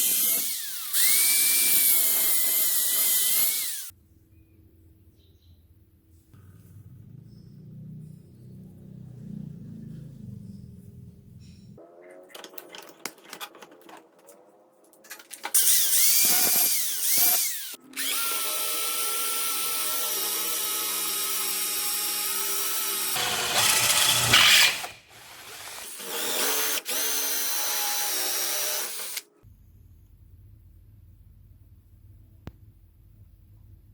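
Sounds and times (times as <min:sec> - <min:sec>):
electric drill whining: 0:00.0 - 0:03.9, 0:15.6 - 0:29.2.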